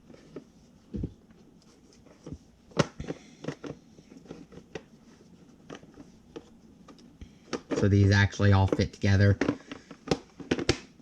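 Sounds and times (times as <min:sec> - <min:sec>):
plastic cases knocking and clicking: 0:02.7 - 0:04.9, 0:07.4 - 0:11.0.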